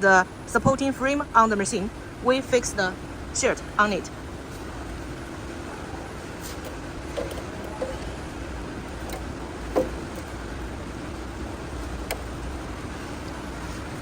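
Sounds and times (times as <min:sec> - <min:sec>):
machinery hum: 0:00.0 - 0:14.0
faint short knocks: 0:08.9 - 0:10.5.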